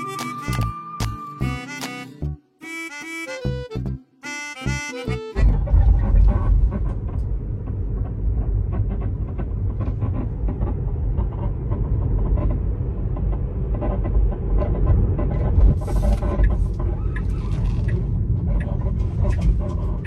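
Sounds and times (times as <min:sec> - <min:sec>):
car road rumble: 0:05.4 - 0:20.0.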